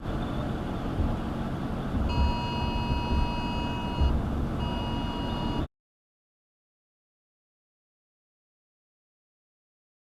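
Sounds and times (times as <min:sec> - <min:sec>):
road and engine rumble: 0:00.0 - 0:05.7
electronic beep tone: 0:02.1 - 0:05.7.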